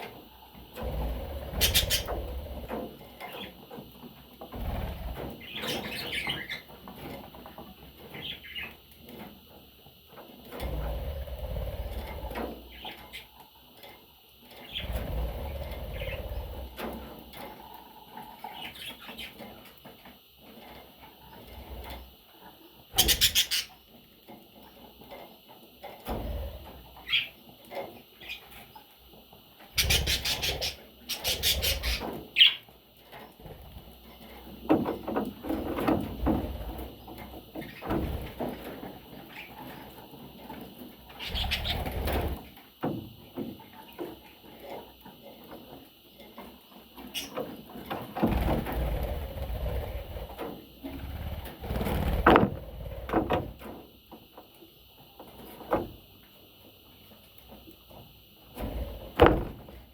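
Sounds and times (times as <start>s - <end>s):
bird chicks chirping: 0.0s - 3.8s, 4.5s - 6.8s, 10.6s - 13.6s, 14.5s - 19.5s, 21.3s - 24.0s, 26.9s - 27.4s, 29.7s - 35.2s, 41.0s - 42.2s, 46.9s - 47.5s.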